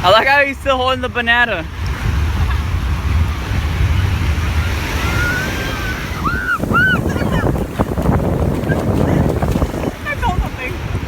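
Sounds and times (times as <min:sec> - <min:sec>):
ocean surf washing in: 0:00.0 - 0:11.0
wind buffeting microphone: 0:00.0 - 0:11.0
high arching calls: 0:04.6 - 0:09.4.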